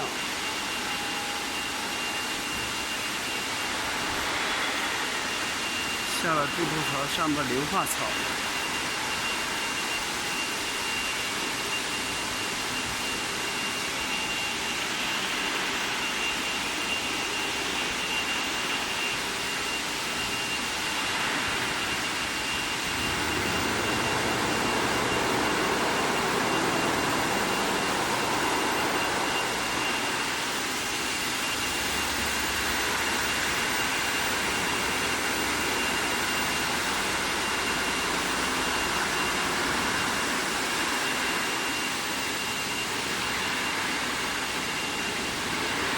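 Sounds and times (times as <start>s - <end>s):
high-pitched whine: 0.0s - 45.9s
machinery noise: 3.7s - 8.8s, 21.0s - 35.5s.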